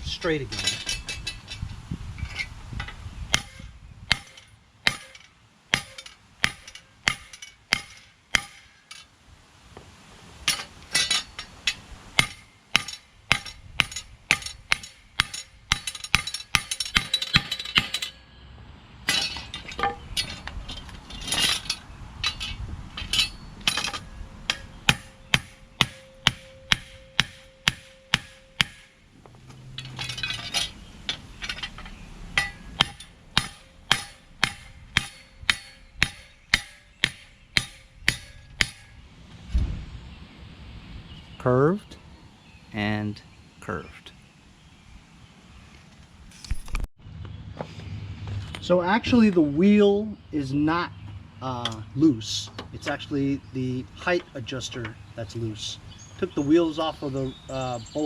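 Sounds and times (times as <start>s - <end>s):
hammer striking metal: 3.3s - 8.8s, 10.5s - 18.2s, 21.6s - 29.0s, 32.4s - 39.0s.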